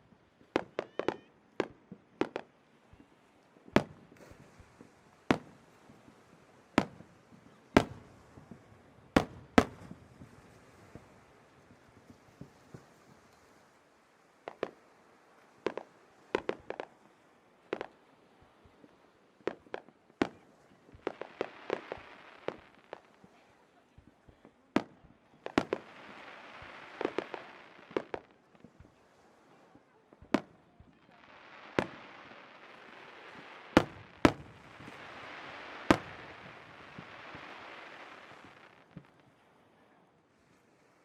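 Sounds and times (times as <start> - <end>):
fireworks crackling hiss: 3.6 - 39.5
fireworks bangs: 3.8 - 11.2, 19.4 - 39.4.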